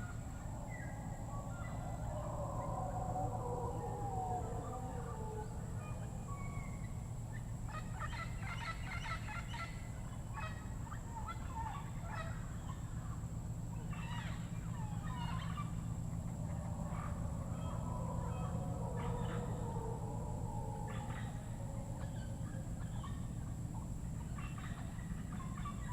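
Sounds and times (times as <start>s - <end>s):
low wavering bird calls: 0.0s - 25.9s
steady high hum: 0.0s - 25.9s
birds with rapid fowl-like calls: 3.4s - 25.9s.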